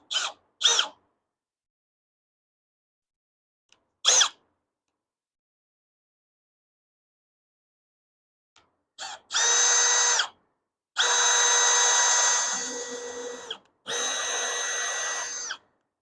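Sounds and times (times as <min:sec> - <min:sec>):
cordless drill whining: 0:09.0 - 0:10.4, 0:11.0 - 0:15.7.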